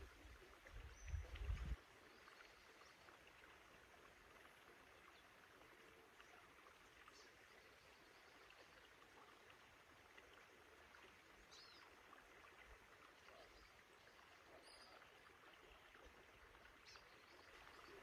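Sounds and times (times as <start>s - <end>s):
steady hiss of running water: 0.0s - 18.0s.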